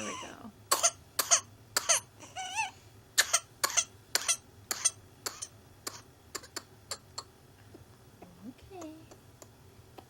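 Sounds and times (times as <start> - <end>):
child coughing fit: 0.0 - 2.1, 3.2 - 7.3.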